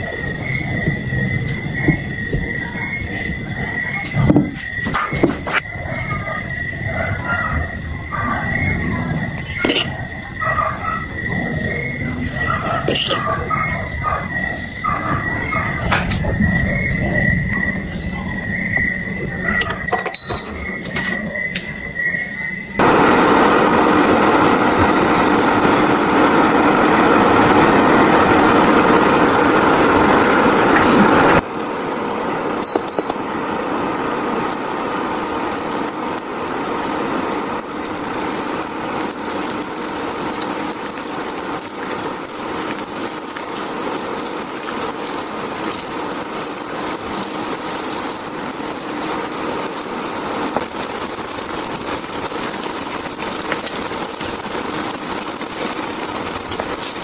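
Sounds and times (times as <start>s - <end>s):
fish frying in hot oil: 34.1s - 57.0s.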